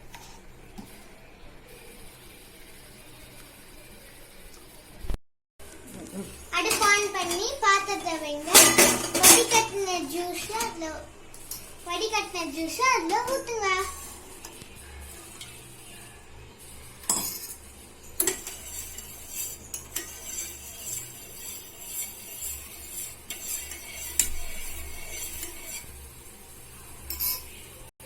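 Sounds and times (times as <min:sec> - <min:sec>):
spoon stirring in a pot: 0:05.9 - 0:27.9.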